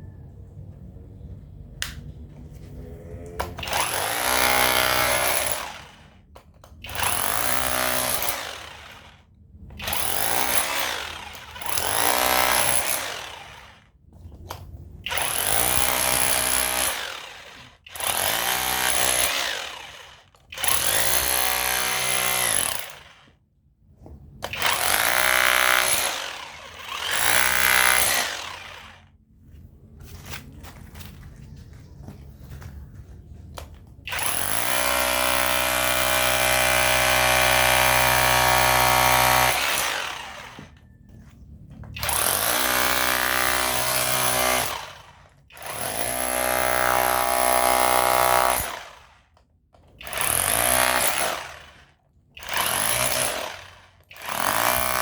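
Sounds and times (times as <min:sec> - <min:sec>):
rotary hammer breaking concrete: 0:03.6 - 0:06.0, 0:06.8 - 0:09.1, 0:09.8 - 0:13.7, 0:15.1 - 0:23.2, 0:24.4 - 0:29.0, 0:34.1 - 0:40.8, 0:42.0 - 0:49.0, 0:50.0 - 0:51.8, 0:52.4 - 0:55.0.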